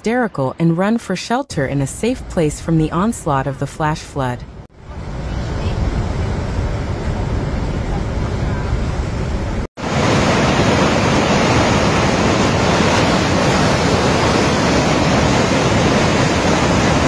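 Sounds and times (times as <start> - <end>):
floodwater rushing: 4.9 - 17.0.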